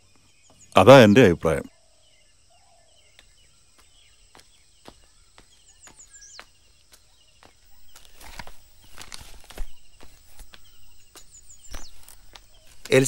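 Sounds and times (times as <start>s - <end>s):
birds chirping: 0.0s - 13.0s
rustling footsteps: 3.1s - 13.0s.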